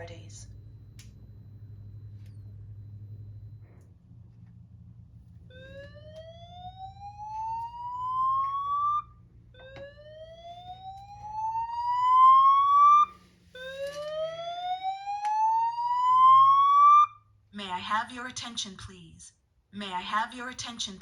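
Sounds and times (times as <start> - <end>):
slow-whoop alarm tone: 5.4 - 17.3.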